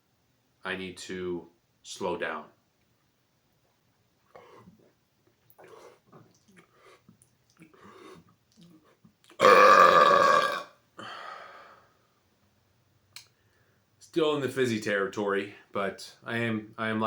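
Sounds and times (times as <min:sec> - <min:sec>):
faint small sounds: 0:01.4 - 0:09.4
man burping: 0:09.4 - 0:11.2.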